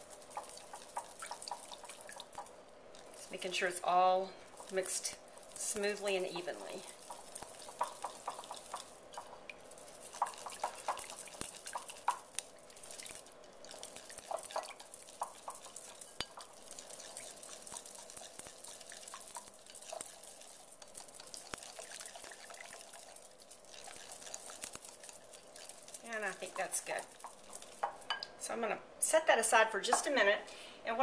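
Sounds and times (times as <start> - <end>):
whisk tapping bowl: 0.0 - 3.8, 4.5 - 28.3
whisk swishing in liquid: 4.5 - 28.3.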